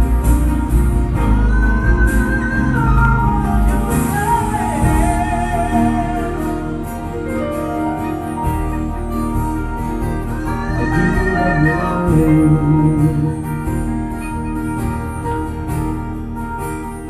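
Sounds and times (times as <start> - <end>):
band playing instrumental: 0.0 - 17.0
guitar: 0.0 - 17.0.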